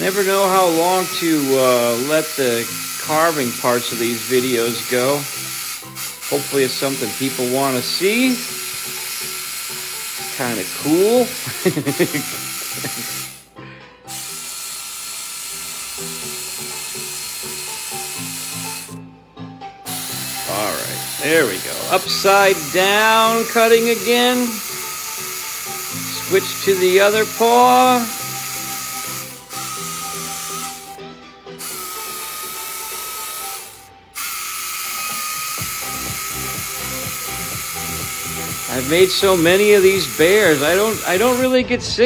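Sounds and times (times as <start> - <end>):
chainsaw cutting wood: 0.0 - 13.5, 14.1 - 19.0, 19.8 - 41.7
background music with bass: 18.9 - 24.6, 35.6 - 42.0.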